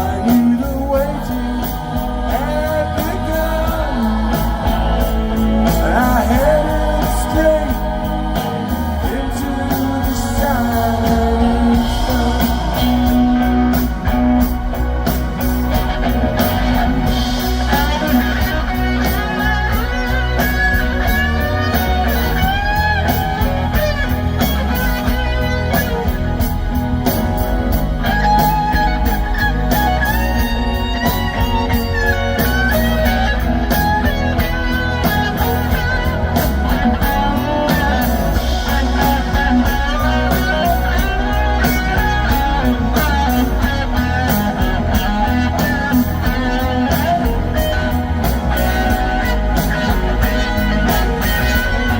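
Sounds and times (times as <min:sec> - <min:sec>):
rock band playing: 0:00.0 - 0:51.9
electric guitar solo: 0:01.2 - 0:51.9.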